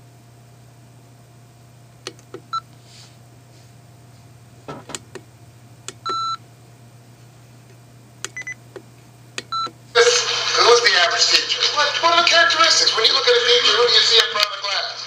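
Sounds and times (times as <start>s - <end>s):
steady low hum: 0.0s - 15.0s
short electronic beeps: 6.0s - 6.4s.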